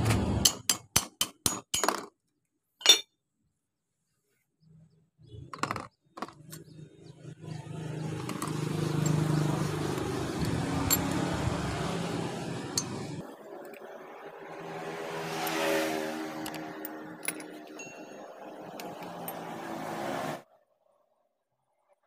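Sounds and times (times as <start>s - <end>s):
engine running: 6.7s - 20.4s.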